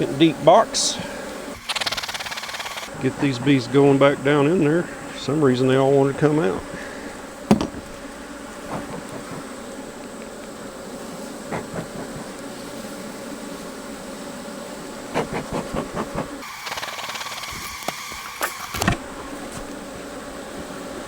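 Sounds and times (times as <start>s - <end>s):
bees buzzing: 0.0s - 21.0s
wooden hive boxes knocking: 1.6s - 10.6s, 11.2s - 12.9s, 15.0s - 21.0s.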